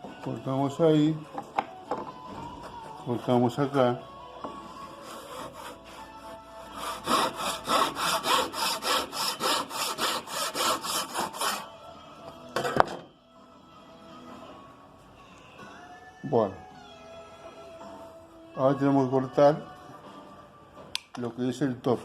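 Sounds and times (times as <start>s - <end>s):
hand saw cutting wood: 4.9s - 11.7s.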